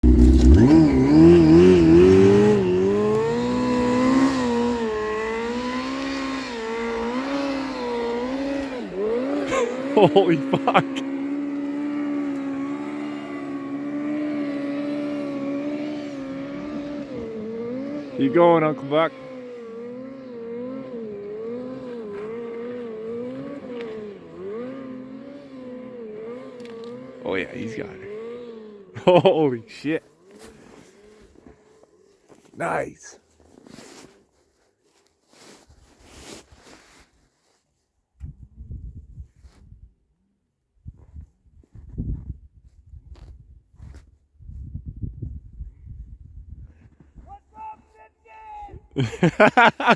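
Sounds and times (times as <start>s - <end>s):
vehicle engine revving: 0.0s - 29.3s.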